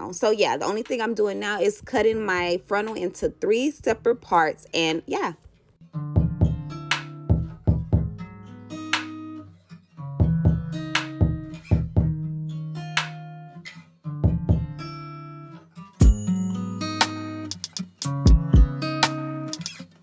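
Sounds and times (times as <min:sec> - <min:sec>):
plucked guitar music: 0:05.8 - 0:20.0.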